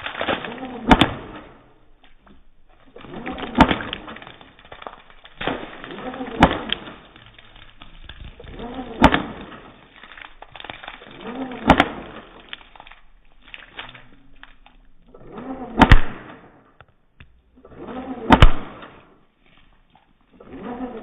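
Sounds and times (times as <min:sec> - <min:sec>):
slowed airsoft gun shots: 0:00.6 - 0:01.6, 0:15.6 - 0:16.6, 0:18.2 - 0:19.0.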